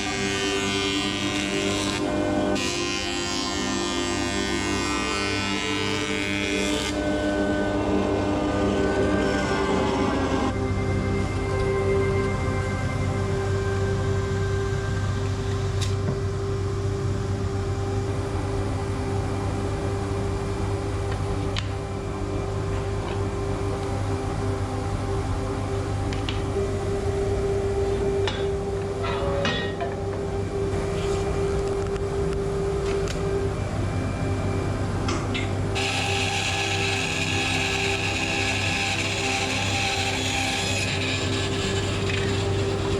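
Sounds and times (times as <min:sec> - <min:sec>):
machine motor humming: 0:35.7 - 0:42.9.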